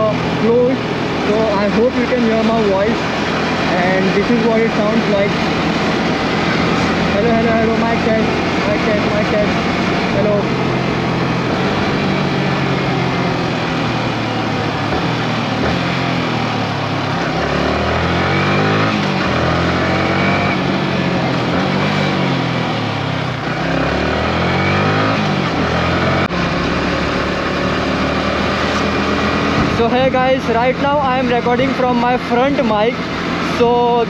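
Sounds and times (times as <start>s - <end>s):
motorcycle engine running: 0.0s - 34.0s.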